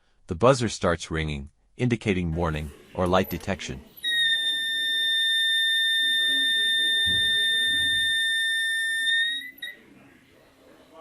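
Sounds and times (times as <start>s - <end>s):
electronic buzzer high-pitched tone: 4.0s - 9.8s.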